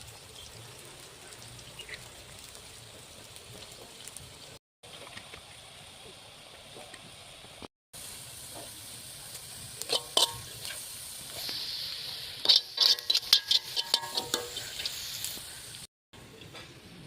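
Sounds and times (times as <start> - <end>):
vegetable slices sizzling in oil: 0.0 - 4.6, 5.8 - 15.9
metal spatula scraping a pan: 9.9 - 11.5, 12.4 - 15.5.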